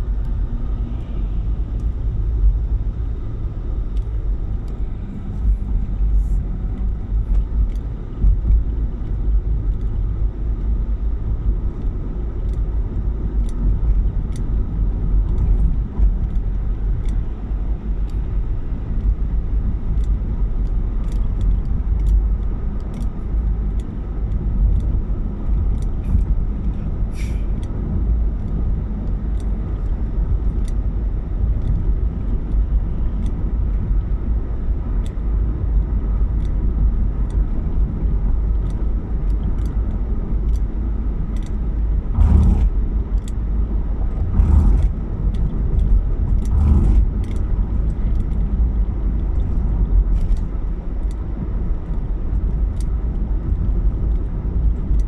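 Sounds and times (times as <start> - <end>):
car driving rumble: 0.0 - 55.0.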